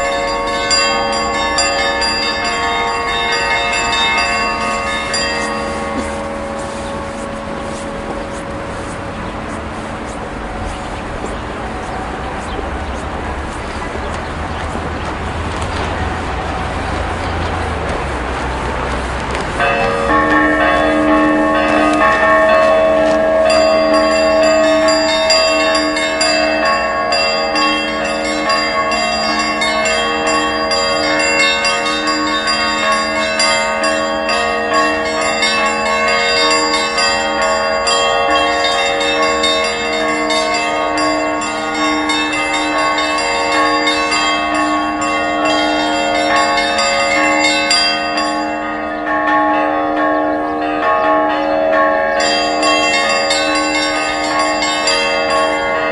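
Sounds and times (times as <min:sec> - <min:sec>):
church bells ringing: 0:00.0 - 0:55.9.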